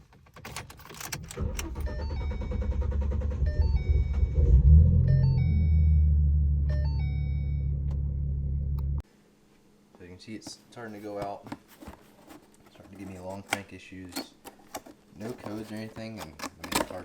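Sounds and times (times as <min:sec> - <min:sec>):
car engine cranking and idling: 0:00.0 - 0:09.0.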